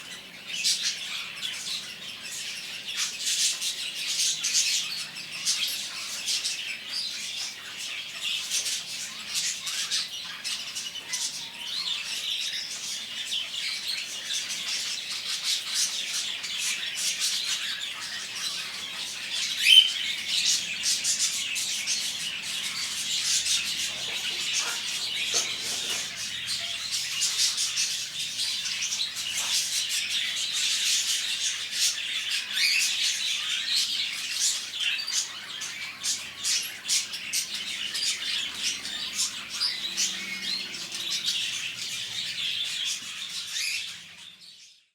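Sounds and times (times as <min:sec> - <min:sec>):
birds chirping and squawking: 0:00.0 - 0:44.9
loud sharp bird call: 0:19.5 - 0:20.3.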